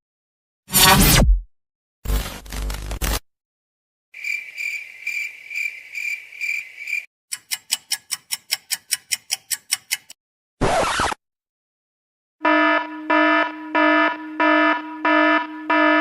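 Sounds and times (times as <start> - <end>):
high cricket-like chirp: 4.2 - 7.1.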